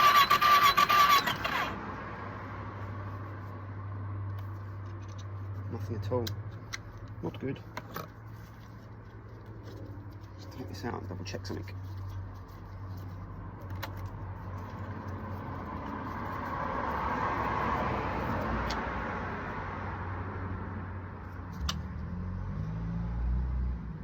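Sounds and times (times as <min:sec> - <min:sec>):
vehicle passing by: 0:00.0 - 0:24.0.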